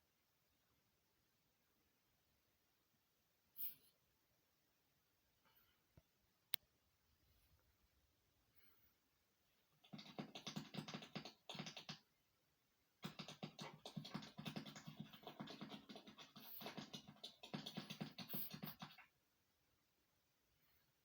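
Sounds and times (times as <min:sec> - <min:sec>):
rapid scratching: 0:09.8 - 0:12.1, 0:13.0 - 0:19.1.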